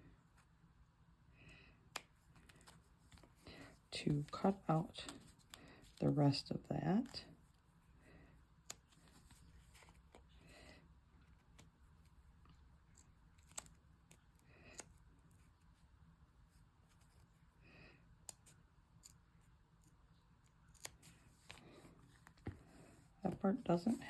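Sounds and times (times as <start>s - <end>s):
soft cutting sounds: 18.2s - 22.4s
scissors snipping: 20.6s - 21.0s.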